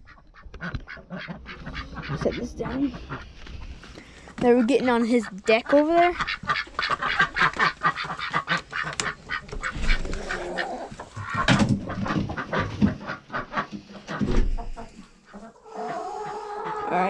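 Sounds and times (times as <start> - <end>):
ducks quacking: 0.0 - 17.0.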